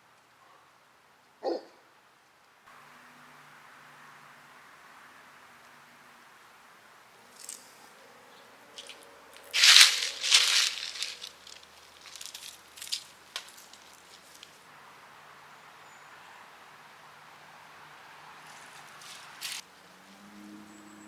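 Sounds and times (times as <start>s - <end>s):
rustling: 8.8s - 14.6s, 18.5s - 19.6s.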